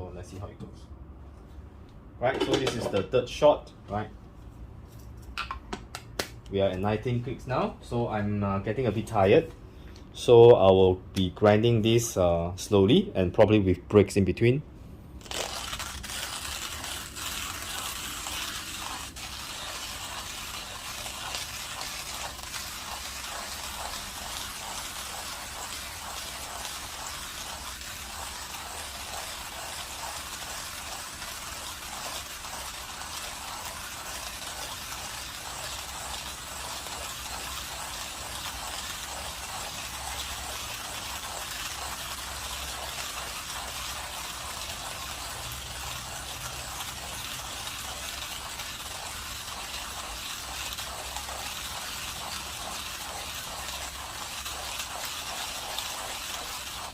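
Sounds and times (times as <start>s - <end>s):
hand coffee grinder grinding beans: 15.2s - 56.9s.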